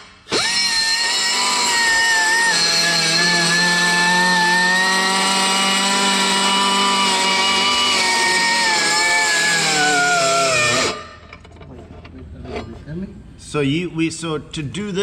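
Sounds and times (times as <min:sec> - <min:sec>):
air grinder whining: 0:00.0 - 0:11.3.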